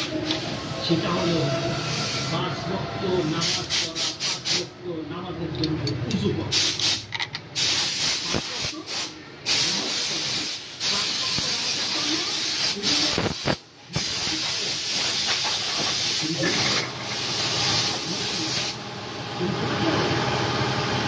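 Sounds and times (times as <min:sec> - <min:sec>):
loud spraying hiss: 0:03.3 - 0:04.7, 0:06.5 - 0:07.0, 0:07.6 - 0:18.8.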